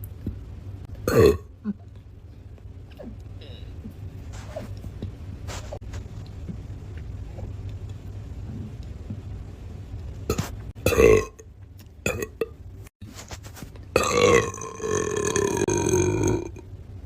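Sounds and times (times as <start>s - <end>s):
person burping loudly: 1.0s - 1.5s, 10.8s - 11.4s, 12.1s - 12.5s, 14.0s - 16.6s.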